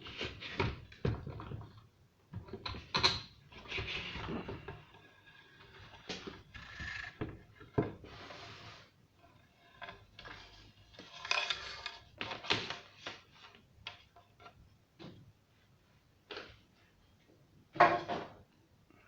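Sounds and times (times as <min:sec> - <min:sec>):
clicks and scrapes of handled parts: 0:09.7 - 0:12.7.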